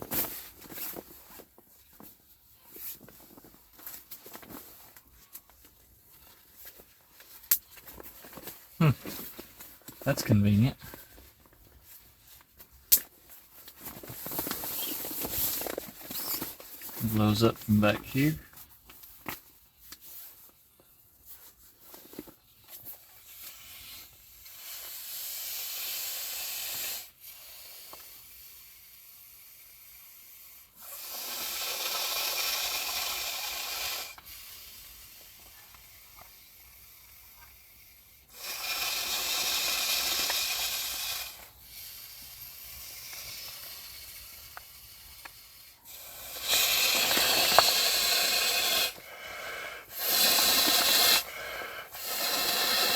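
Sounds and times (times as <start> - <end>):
quiet breathing: 20.1 - 52.9
person blowing into a valve: 30.8 - 35.1, 38.3 - 52.9.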